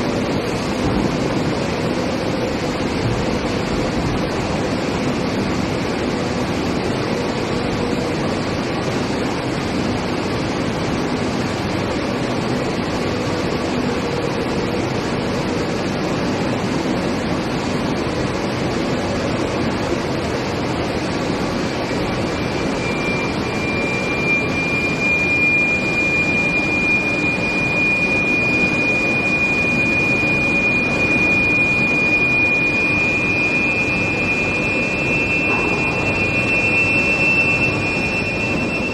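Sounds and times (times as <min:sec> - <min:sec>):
high steady whine: 0:00.0 - 0:38.9
steady industrial machinery noise: 0:00.0 - 0:38.9
second higher whine: 0:22.0 - 0:38.9.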